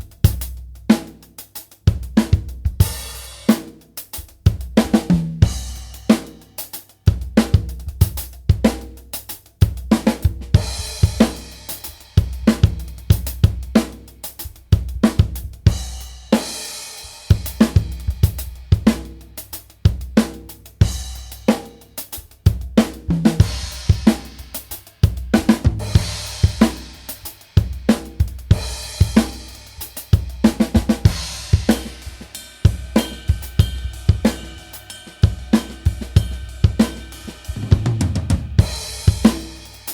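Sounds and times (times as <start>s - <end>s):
drum kit groove: 0.0s - 39.9s
cymbal wash: 31.0s - 37.7s
cymbal ringing: 31.1s - 37.6s.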